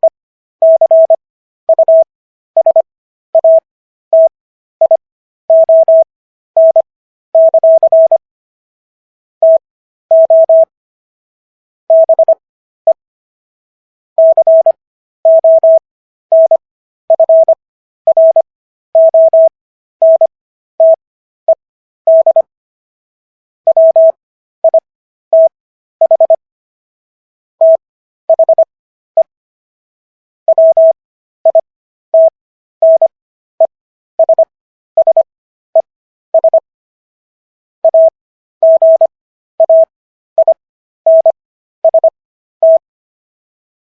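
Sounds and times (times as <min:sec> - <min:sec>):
morse code beeping: 0:14.2 - 0:18.4, 0:19.0 - 0:21.0, 0:22.1 - 0:22.5, 0:25.4 - 0:26.4, 0:27.6 - 0:28.6, 0:30.5 - 0:31.6, 0:32.2 - 0:33.1, 0:37.8 - 0:42.8.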